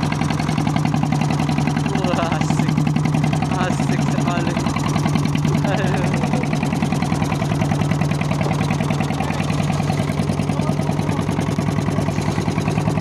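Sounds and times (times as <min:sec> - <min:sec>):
engine running steadily: 0:00.0 - 0:13.0.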